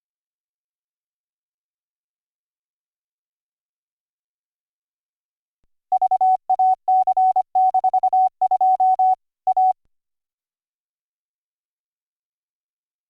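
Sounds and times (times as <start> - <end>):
morse code tone: 5.9 - 9.8.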